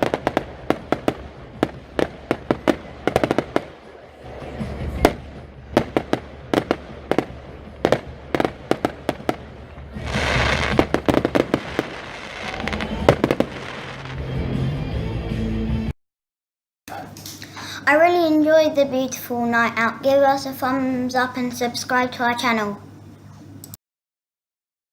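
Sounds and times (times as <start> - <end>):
hissing fireworks crackle: 0.0 - 14.6
fireworks bangs: 0.0 - 14.7.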